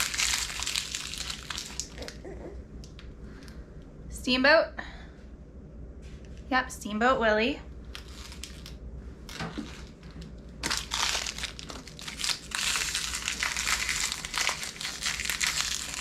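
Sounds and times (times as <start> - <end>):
plastic packaging crinkling and tearing: 0.0 - 2.2, 7.9 - 16.0.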